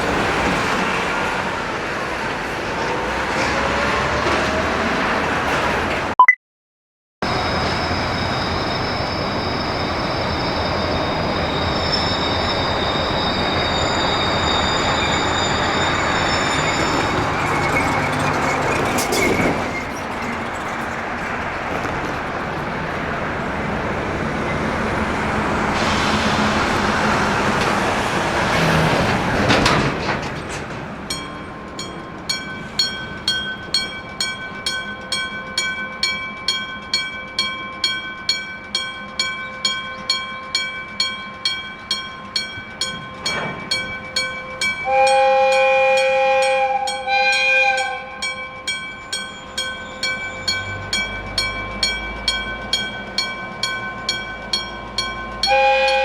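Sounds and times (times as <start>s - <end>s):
low rumble of train: 0.0s - 6.1s, 7.2s - 56.0s
railroad crossing gong bell: 7.2s - 17.4s, 31.0s - 56.0s
vehicle passing with rushing noise: 21.0s - 30.2s
train horn blasts: 44.8s - 48.3s, 55.4s - 56.0s.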